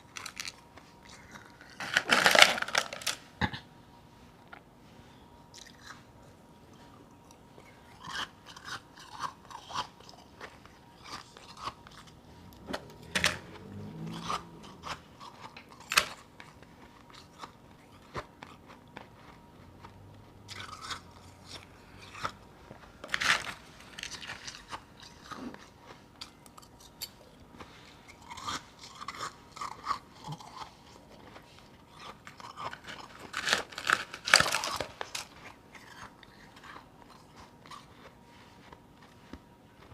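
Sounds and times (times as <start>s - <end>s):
person crunching ice: 1.6s - 3.2s, 23.0s - 25.6s, 32.0s - 37.2s.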